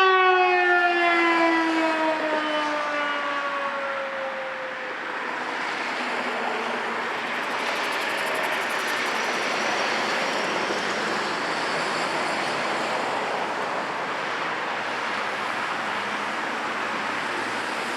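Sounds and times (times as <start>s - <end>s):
siren winding down: 0.0s - 5.1s
steady rushing background noise: 5.0s - 17.9s.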